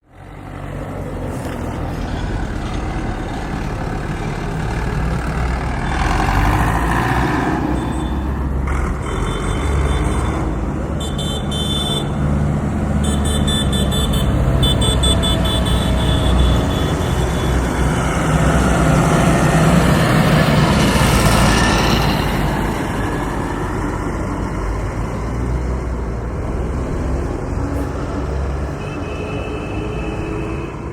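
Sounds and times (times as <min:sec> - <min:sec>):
heavy road traffic rumbling: 0:00.0 - 0:30.9
car horns honking: 0:09.0 - 0:12.3, 0:12.9 - 0:17.8, 0:28.7 - 0:30.9.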